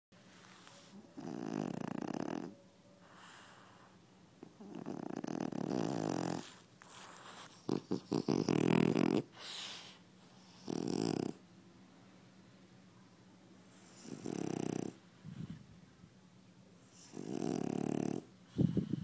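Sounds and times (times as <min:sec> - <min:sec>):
dog snoring: 0:01.1 - 0:11.4, 0:13.7 - 0:15.4, 0:16.8 - 0:19.0.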